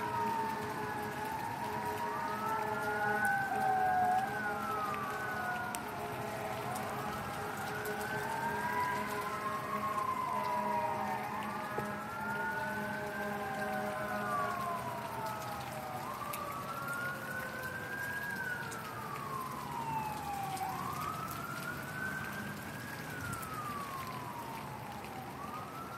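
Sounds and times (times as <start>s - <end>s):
emergency sirens wailing: 0.0s - 25.9s
rain hissing: 0.0s - 25.9s.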